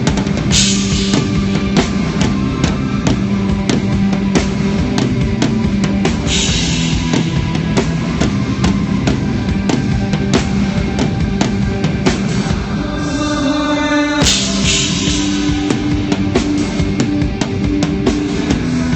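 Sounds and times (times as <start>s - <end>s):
live rock band playing: 0.0s - 18.9s
cymbal crash: 14.2s - 16.9s.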